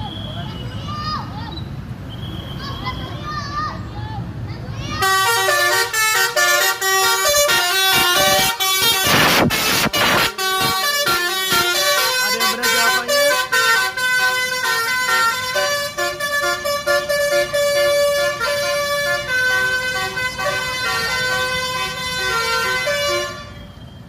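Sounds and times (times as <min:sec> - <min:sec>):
multi-tone musical vehicle horn: 0:05.0 - 0:23.8.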